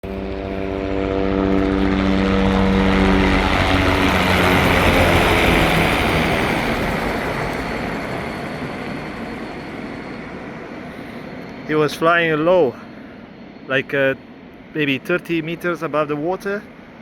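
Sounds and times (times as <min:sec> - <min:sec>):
helicopter flying past: 0:00.0 - 0:17.0.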